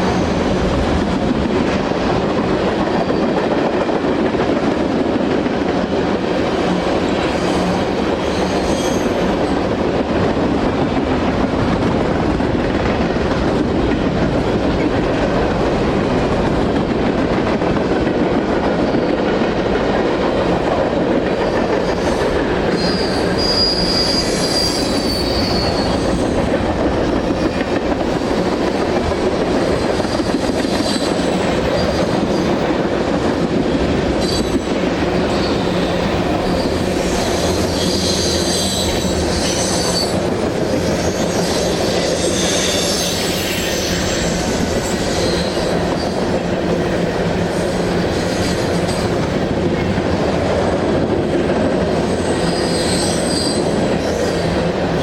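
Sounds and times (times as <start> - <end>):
freight train rumbling past: 0.0 - 55.0
wheel squeal: 8.2 - 9.2, 21.9 - 26.2, 36.6 - 40.2, 41.0 - 46.2, 52.2 - 54.5.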